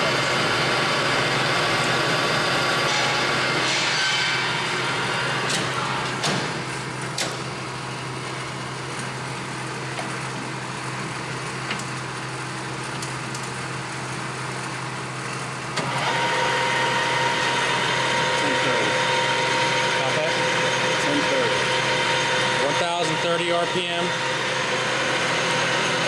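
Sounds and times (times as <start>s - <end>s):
lathe spindle whine: 0.0s - 6.0s, 15.8s - 26.0s
lathe humming: 15.8s - 26.0s.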